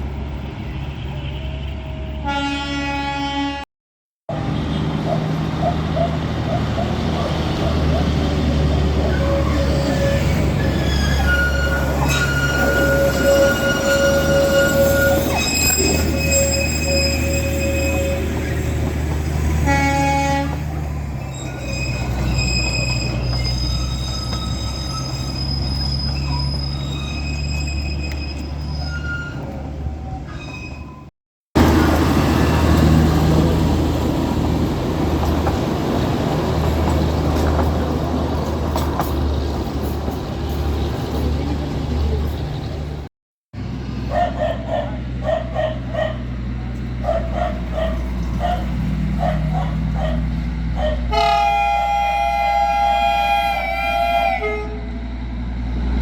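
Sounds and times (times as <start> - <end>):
train rumbling: 0.0 - 3.4, 4.3 - 56.0
train horn toot: 1.1 - 3.7, 9.1 - 18.9, 19.5 - 20.8, 51.1 - 55.0
train wheels squealing: 8.8 - 19.4, 21.0 - 31.1.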